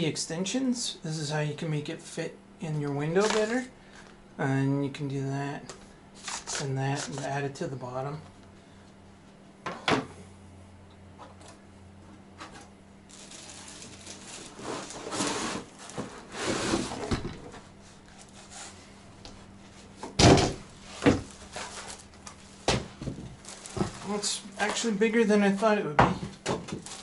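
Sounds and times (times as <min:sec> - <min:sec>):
plastic packaging rustling: 0:13.1 - 0:16.9, 0:20.8 - 0:25.0, 0:26.6 - 0:27.0.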